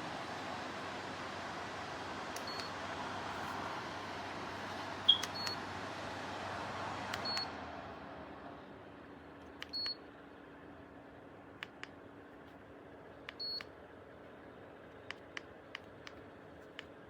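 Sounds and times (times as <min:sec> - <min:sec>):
tower fan blowing air: 0:00.0 - 0:17.0
control panel beeps: 0:02.4 - 0:02.7, 0:05.1 - 0:05.6, 0:07.2 - 0:07.5, 0:09.6 - 0:10.0, 0:13.3 - 0:13.7.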